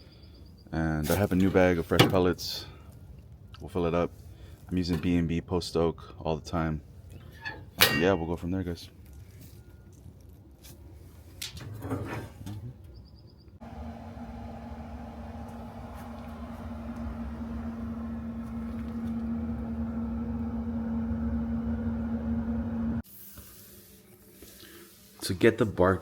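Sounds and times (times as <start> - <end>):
steady machine hum: 13.6 - 23.0.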